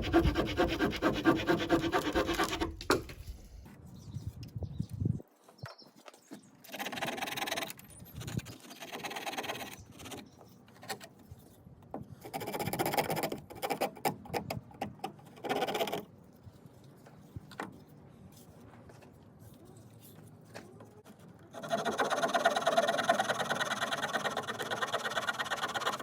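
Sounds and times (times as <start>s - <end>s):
small saw sawing a branch: 0.0s - 3.6s, 6.7s - 10.4s, 21.5s - 26.0s.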